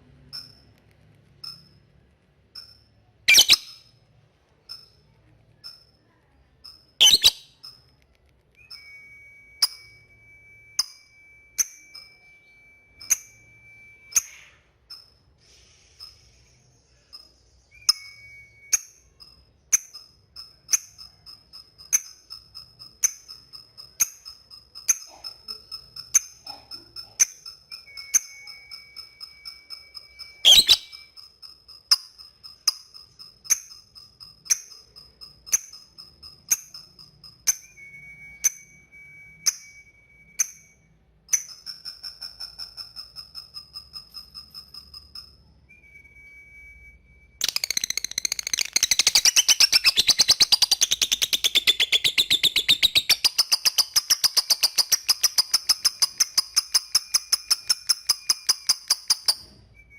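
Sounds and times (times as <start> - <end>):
bird ticking chirps: 0.3 - 4.0, 4.6 - 7.9, 18.7 - 37.8, 41.3 - 45.6, 47.4 - 59.5
thin high steady tone: 8.7 - 42.2.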